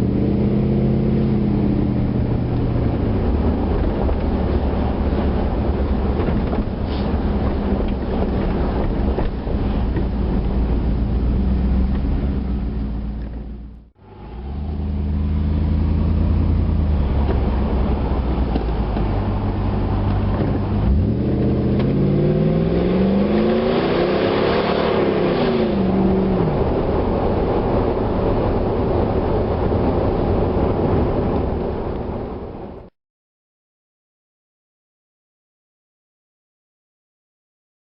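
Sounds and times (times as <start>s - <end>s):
truck engine revving: 13.7s - 31.4s.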